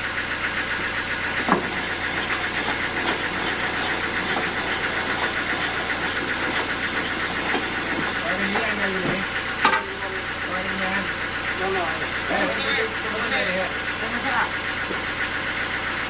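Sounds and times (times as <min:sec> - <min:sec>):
sawmill engine pulsing: 0:00.1 - 0:16.0.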